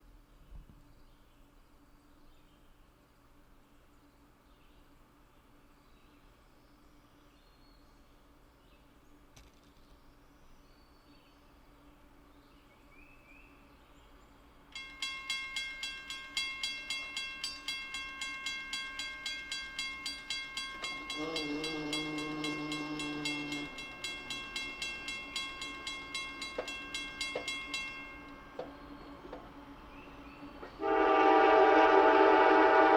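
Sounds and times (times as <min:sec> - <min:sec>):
railroad crossing bell ringing: 0:14.7 - 0:32.9
locomotive horn blast: 0:20.9 - 0:23.7, 0:30.8 - 0:32.9.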